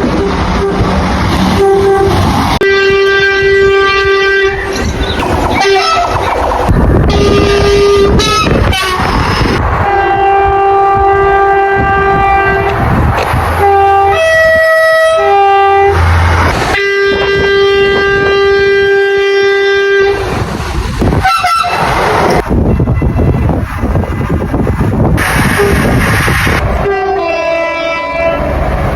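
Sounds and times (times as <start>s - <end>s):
train horn blasts: 0.0s - 0.9s, 1.5s - 4.7s, 5.6s - 6.2s, 7.0s - 12.8s, 13.6s - 16.1s, 16.7s - 20.3s, 21.2s - 21.8s, 25.3s - 25.9s, 26.8s - 28.5s
moving train rumble: 0.0s - 28.9s.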